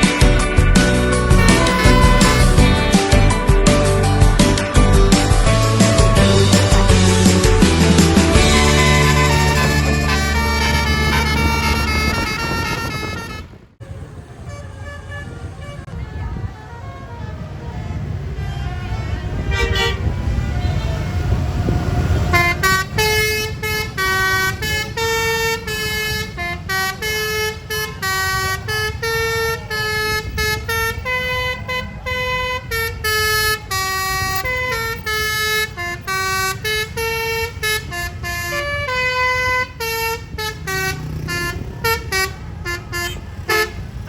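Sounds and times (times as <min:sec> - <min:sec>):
low rumble of passing bus: 0:00.0 - 0:44.0
multi-tone air horn tune: 0:01.3 - 0:03.2, 0:05.9 - 0:07.3, 0:08.4 - 0:13.6, 0:22.3 - 0:44.0.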